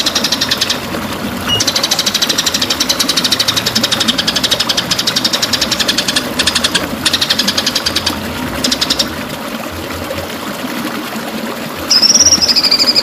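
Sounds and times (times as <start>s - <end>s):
bird singing sharp high notes: 1.5s - 2.0s.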